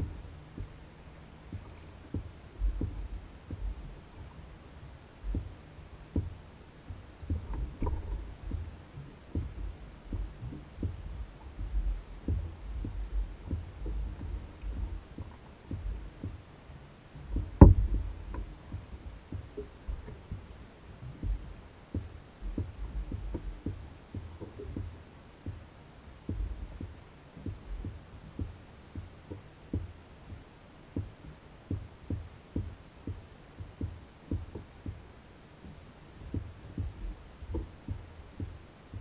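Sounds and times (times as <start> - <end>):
water slapping canoe hull: 0.0 - 39.0
sharp knock on hull: 17.4 - 20.2.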